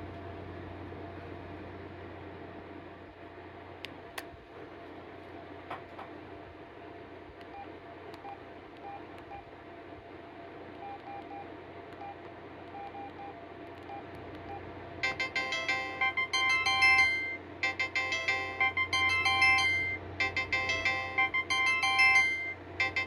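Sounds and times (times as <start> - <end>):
electronic ringtone melody: 15.0 - 23.0
phone keypad beeps: 15.0 - 23.0.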